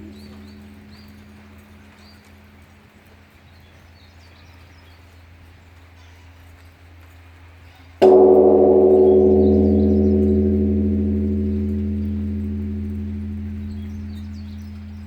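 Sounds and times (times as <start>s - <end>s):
large temple bell ringing: 0.0s - 3.1s, 8.0s - 15.0s.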